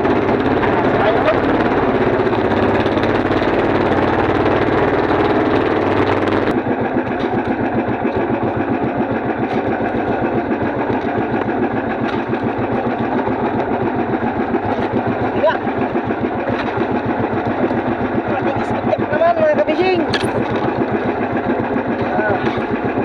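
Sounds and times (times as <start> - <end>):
boat engine running: 0.0 - 23.0.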